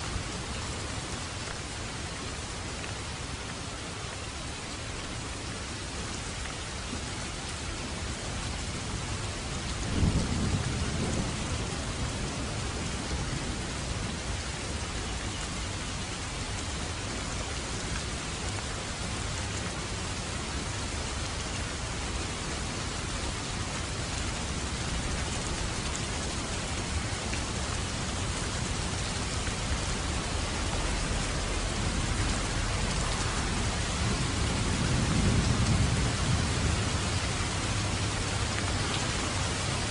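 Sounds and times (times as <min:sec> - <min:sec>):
steady rain falling: 0:00.0 - 0:39.9
low rumble of thunder: 0:08.3 - 0:15.2, 0:19.0 - 0:39.8.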